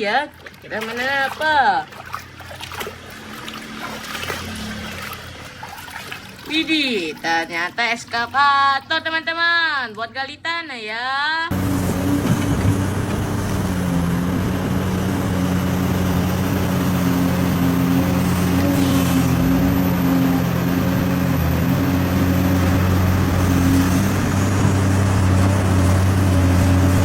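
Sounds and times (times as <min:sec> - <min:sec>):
motor humming: 0:11.5 - 0:27.0.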